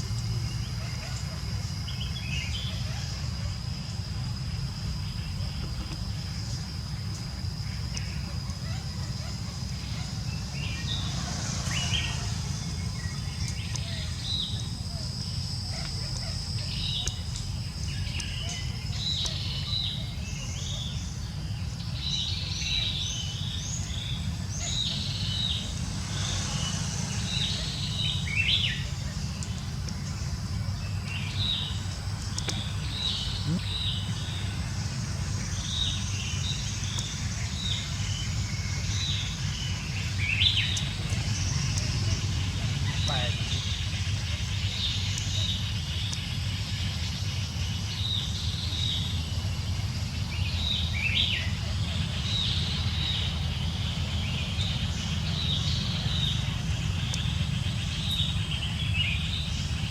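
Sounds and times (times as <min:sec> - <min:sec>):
small birds chirping: 0:00.0 - 0:59.9
steady low rumble: 0:00.0 - 0:59.9.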